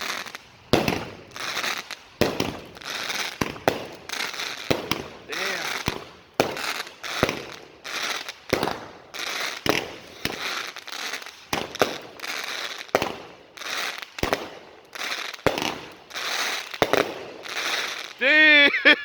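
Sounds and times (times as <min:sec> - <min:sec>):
firework hiss: 0:00.0 - 0:18.8
firework cake reports: 0:05.2 - 0:06.0, 0:18.2 - 0:19.0.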